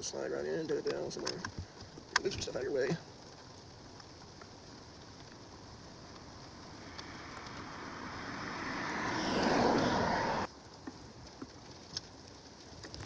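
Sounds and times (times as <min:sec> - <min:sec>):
vehicle rushing past: 0:06.5 - 0:10.5.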